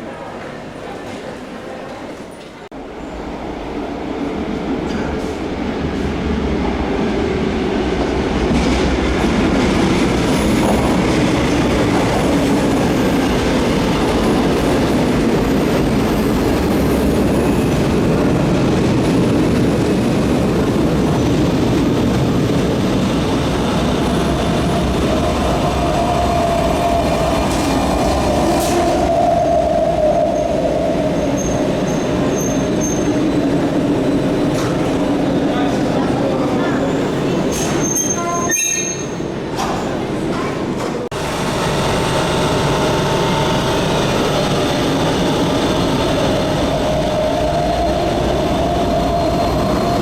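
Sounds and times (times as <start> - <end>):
train wheels rumbling on track: 1.0 - 50.0.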